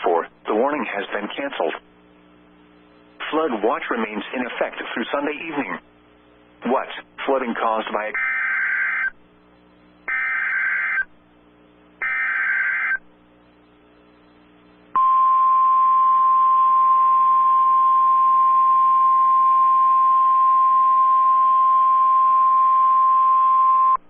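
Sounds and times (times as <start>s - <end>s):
steady attention tone: 8.0s - 24.0s.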